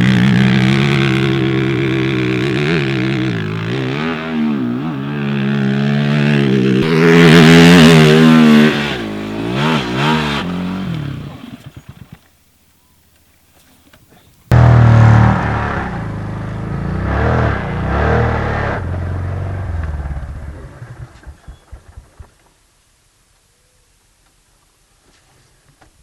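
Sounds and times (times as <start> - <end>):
quad engine revving: 0.0 - 12.2, 14.5 - 21.4.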